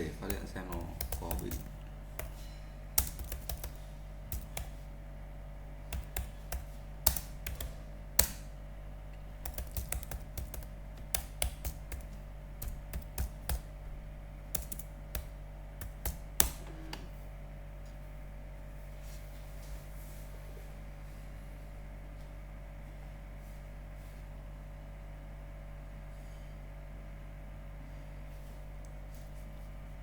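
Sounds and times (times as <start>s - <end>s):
keyboard keys clicking: 0.0s - 4.8s, 5.9s - 8.5s, 9.4s - 13.8s, 14.5s - 17.1s
low electrical hum: 0.0s - 30.0s.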